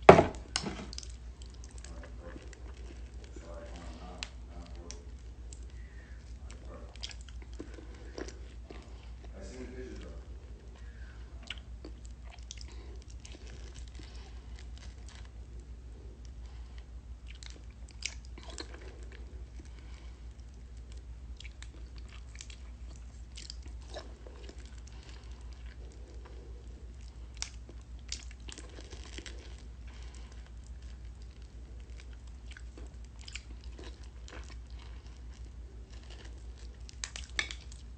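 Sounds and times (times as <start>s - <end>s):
person biting and chewing: 17.2s - 37.9s.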